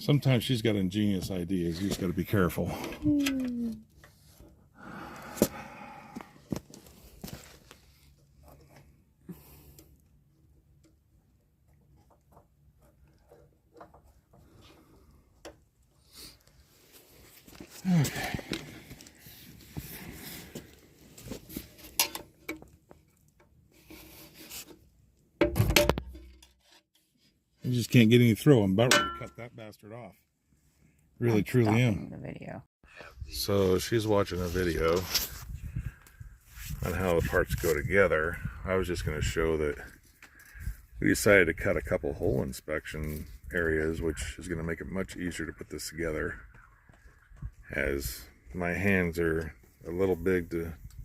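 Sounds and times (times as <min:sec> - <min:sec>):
metal tools clinking and scraping: 0:28.9 - 0:29.4.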